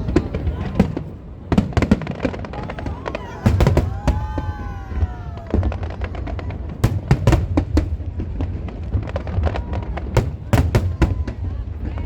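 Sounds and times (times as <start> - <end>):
fireworks bangs: 0.0 - 12.0
whistling firework shell: 2.6 - 6.2, 6.8 - 8.1, 9.0 - 11.6.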